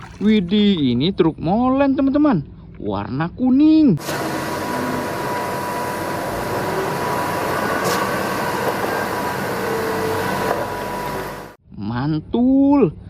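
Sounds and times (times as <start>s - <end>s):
water spraying: 4.0s - 11.6s.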